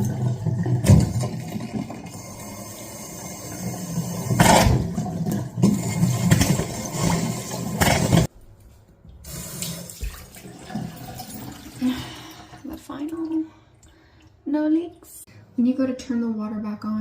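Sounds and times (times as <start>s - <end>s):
faucet sputtering water and air: 0.0s - 8.3s, 9.2s - 14.4s.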